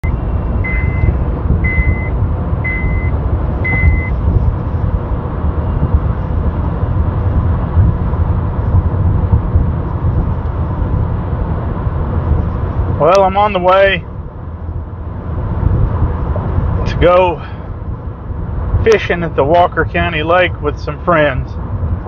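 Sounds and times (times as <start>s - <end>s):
short high electronic beeps: 0.0s - 2.1s, 2.7s - 3.1s, 3.7s - 4.2s
car road and engine noise: 0.0s - 22.0s.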